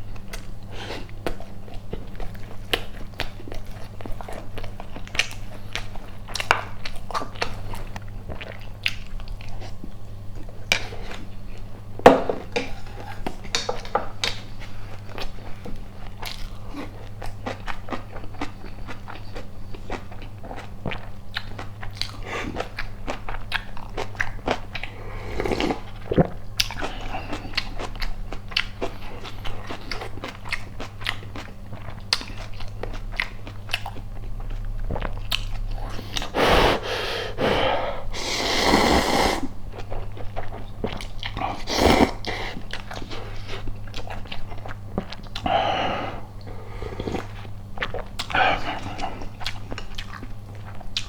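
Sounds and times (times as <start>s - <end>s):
person chewing with wet mouth clicks: 16.0s - 37.4s, 38.1s - 45.5s.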